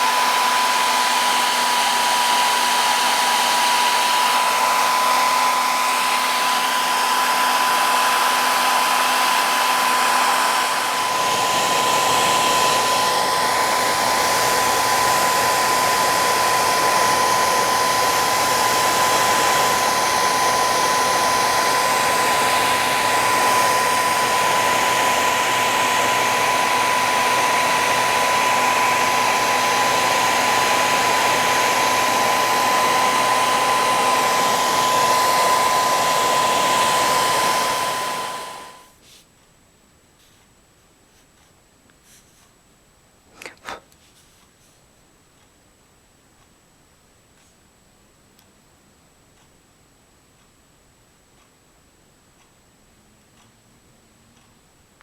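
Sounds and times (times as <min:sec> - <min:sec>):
blower whine: 0:00.0 - 0:38.9
hot-air blower running: 0:00.0 - 0:38.9.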